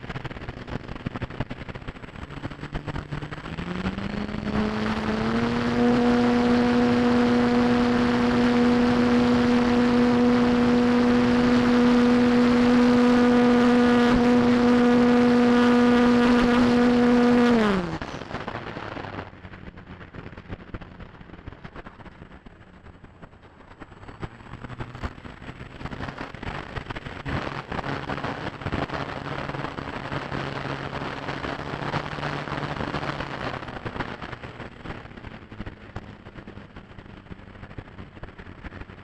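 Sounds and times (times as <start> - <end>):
wind rushing over microphone: 0.0 - 39.0
model airplane motor whine: 2.4 - 18.4.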